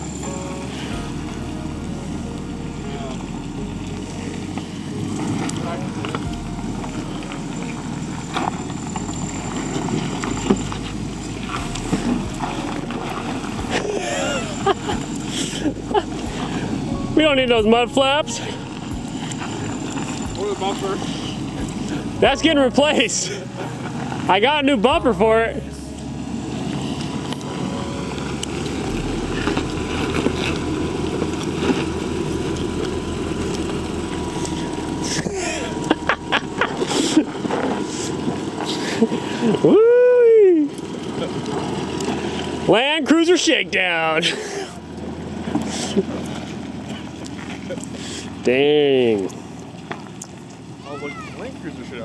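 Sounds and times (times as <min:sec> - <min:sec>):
off-road vehicle engine running: 0:00.0 - 0:52.0.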